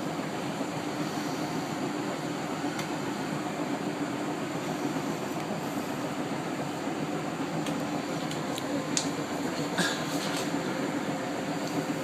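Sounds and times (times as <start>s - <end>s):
washing machine spinning: 0.0s - 12.0s.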